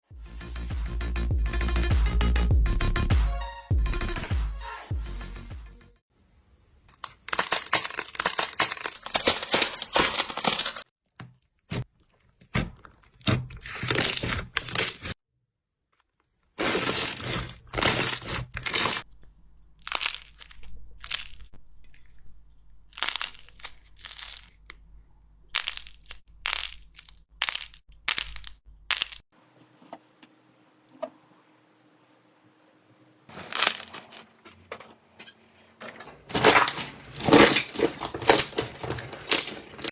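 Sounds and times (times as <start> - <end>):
slime crackling and crunching: 7.0 - 10.9, 19.8 - 21.5, 22.9 - 24.9, 25.5 - 29.2, 33.3 - 34.0, 36.3 - 39.9.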